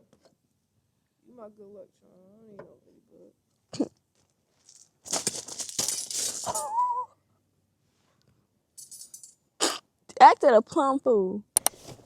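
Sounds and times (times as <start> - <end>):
paper bag crinkling: 4.6 - 6.7.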